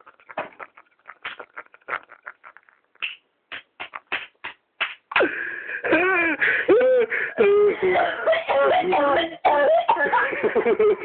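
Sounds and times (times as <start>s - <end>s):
man laughing helplessly: 0.1s - 2.6s, 5.2s - 11.0s.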